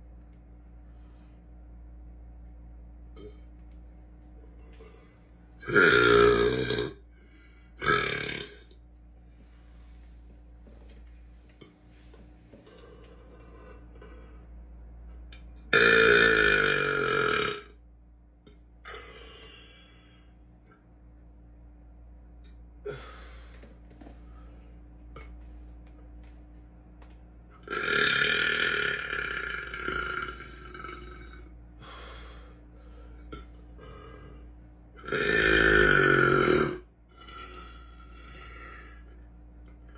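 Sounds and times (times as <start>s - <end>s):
quiet breathing: 0.7s - 1.8s, 7.1s - 7.8s, 18.9s - 20.6s, 31.7s - 34.7s
man belching: 5.6s - 7.0s, 7.8s - 8.7s, 15.7s - 17.7s, 27.6s - 31.5s, 35.0s - 38.7s
man burping loudly: 5.6s - 7.0s, 7.8s - 8.7s, 15.7s - 17.8s, 27.6s - 31.5s, 35.0s - 39.0s.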